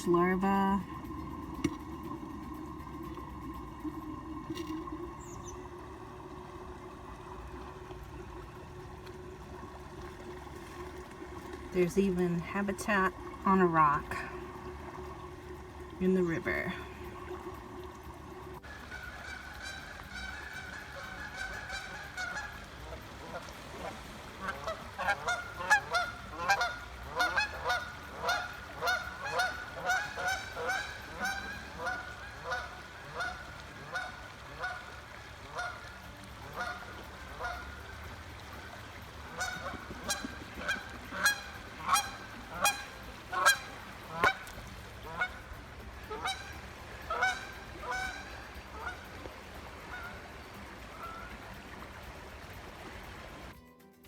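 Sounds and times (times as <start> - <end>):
creek rushing: 0.0 - 53.6
waterfowl calling: 16.3 - 53.5.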